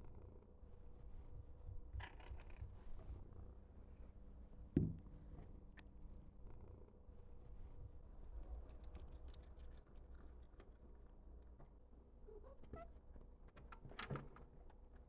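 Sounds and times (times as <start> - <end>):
faint small clicks: 8.6 - 10.8.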